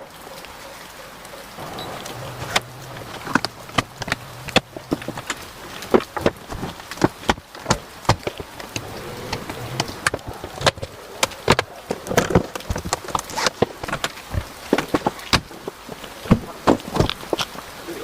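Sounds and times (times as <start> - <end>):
faint hum: 1.6 - 6.8
sharp clicks and knocks: 1.6 - 17.6.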